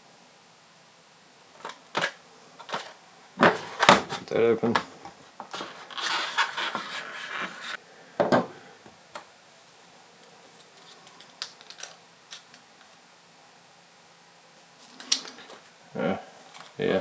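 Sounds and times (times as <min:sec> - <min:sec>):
packaging rustling: 0:01.6 - 0:07.8.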